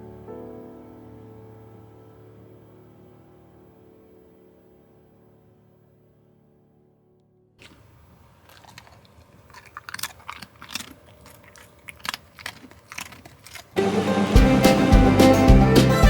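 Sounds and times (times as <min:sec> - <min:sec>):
crunching and clicking: 0:07.6 - 0:13.8
bluegrass music with fiddle and guitar: 0:13.8 - 0:16.0.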